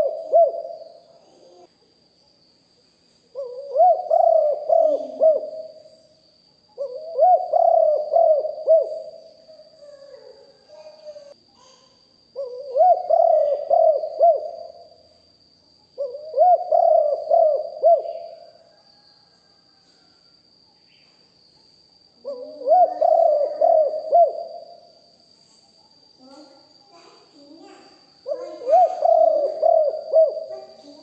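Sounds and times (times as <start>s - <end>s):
dove cooing: 0.0s - 1.7s, 3.3s - 5.9s, 6.8s - 11.1s, 12.4s - 15.0s, 16.0s - 19.0s, 22.2s - 24.9s, 27.6s - 31.0s.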